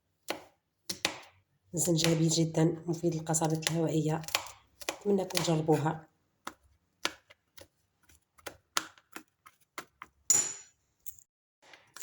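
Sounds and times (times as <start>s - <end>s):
knife chopping on cutting board: 0.2s - 2.3s, 3.4s - 7.7s.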